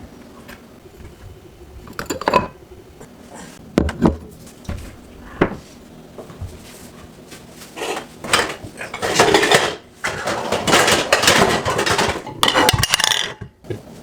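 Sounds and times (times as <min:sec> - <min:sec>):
utensils clattering against dishes: 0:01.9 - 0:02.6, 0:07.8 - 0:13.5.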